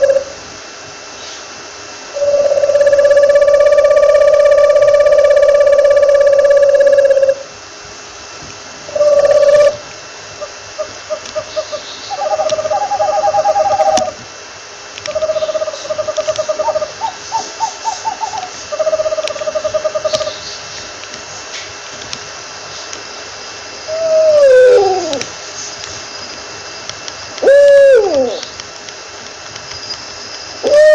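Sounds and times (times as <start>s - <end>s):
owl trilled hoots: 0.0s - 0.4s, 2.1s - 7.5s, 8.9s - 9.8s, 10.4s - 14.2s, 15.0s - 20.4s, 23.8s - 25.3s, 27.4s - 28.6s, 30.6s - 30.9s
owl whinny-like call: 0.0s - 0.4s, 2.1s - 7.4s, 8.9s - 9.8s, 11.1s - 14.2s, 23.9s - 25.3s, 27.4s - 28.4s, 30.6s - 30.9s.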